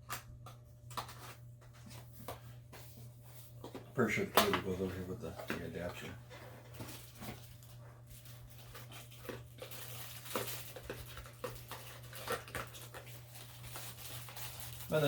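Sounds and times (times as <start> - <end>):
packaging rustling and clicking: 3.7 - 15.0.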